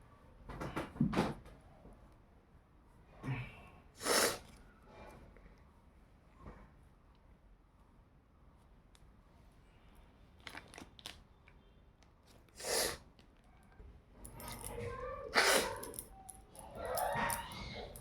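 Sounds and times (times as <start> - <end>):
person sneezing: 4.0 - 4.4, 12.6 - 13.0, 15.3 - 15.9.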